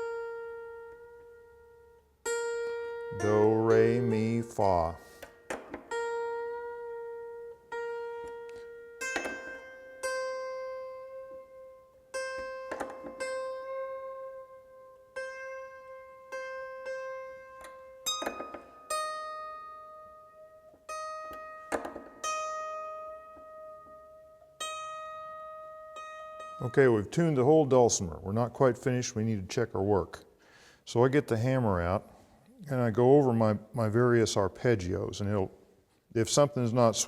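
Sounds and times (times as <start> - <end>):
dulcimer strings plucked: 0.0 - 28.8.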